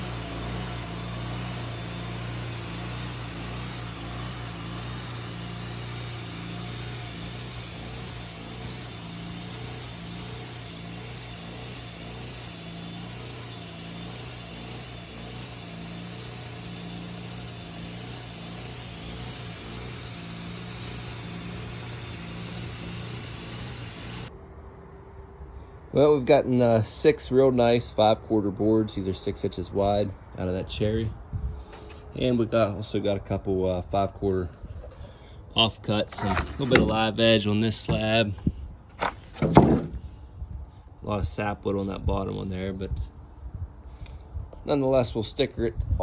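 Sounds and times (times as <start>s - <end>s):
saw blade cutting log: 0.0s - 24.3s, 35.9s - 40.1s
sawmill engine humming: 0.0s - 24.3s, 34.8s - 40.1s.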